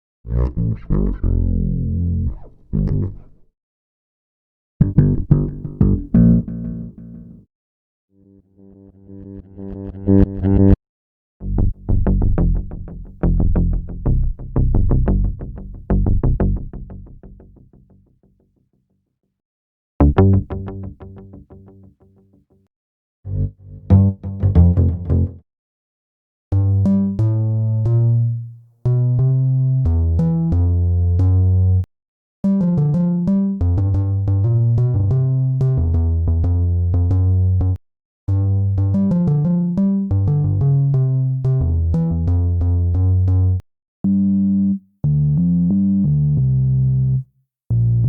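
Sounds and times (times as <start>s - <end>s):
synth bass loops: 23.3s - 25.4s, 41.4s - 46.8s.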